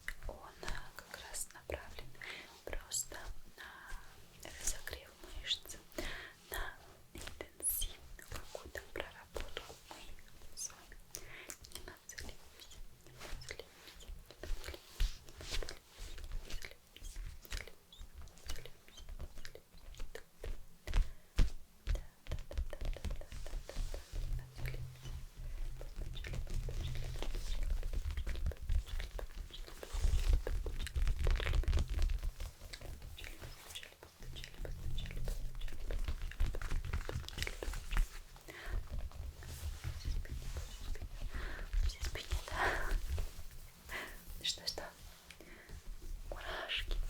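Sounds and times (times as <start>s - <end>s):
hands rubbing on microphone: 0.0s - 47.0s.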